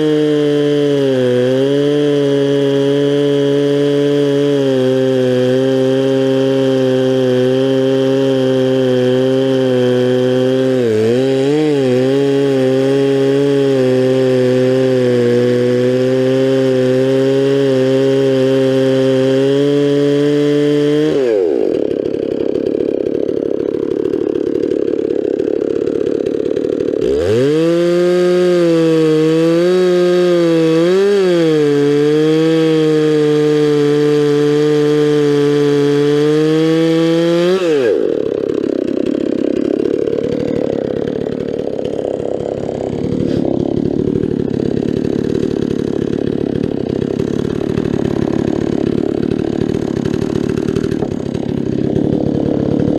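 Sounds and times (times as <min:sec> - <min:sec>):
chainsaw cutting a log: 0:00.0 - 0:52.9.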